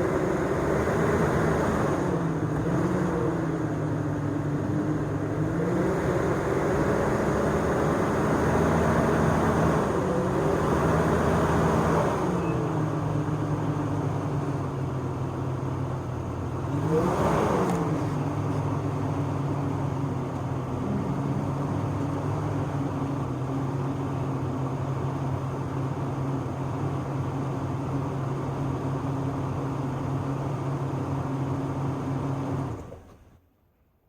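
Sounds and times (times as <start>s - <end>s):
truck engine idling: 18.2s - 25.7s.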